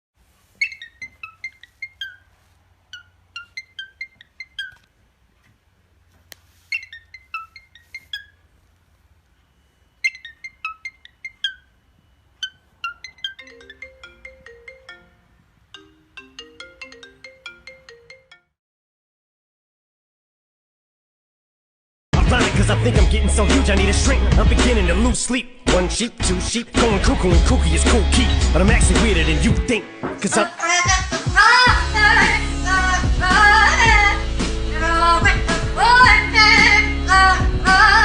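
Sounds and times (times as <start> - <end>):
ringtone melody: 12.8 - 18.6.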